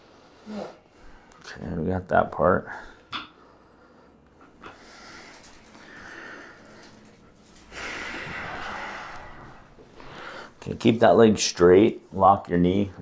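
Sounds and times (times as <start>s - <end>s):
heavy noisy breathing: 2.8s - 11.3s.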